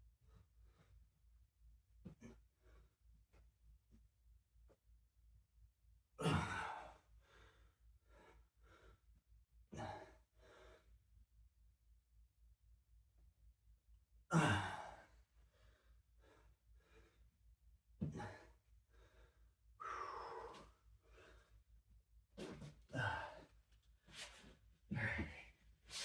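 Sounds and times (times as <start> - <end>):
person breathing hard: 15.5 - 17.3, 18.1 - 21.6.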